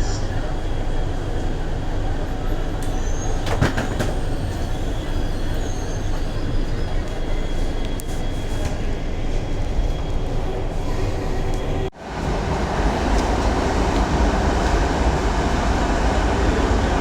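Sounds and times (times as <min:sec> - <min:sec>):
faint high wheel squeal: 0:02.6 - 0:03.5, 0:04.2 - 0:11.6
train rumble inside car: 0:06.6 - 0:17.0.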